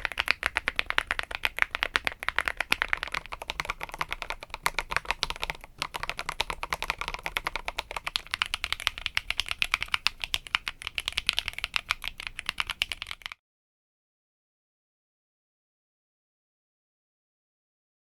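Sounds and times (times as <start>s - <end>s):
mechanical keyboard typing: 0.0s - 13.4s.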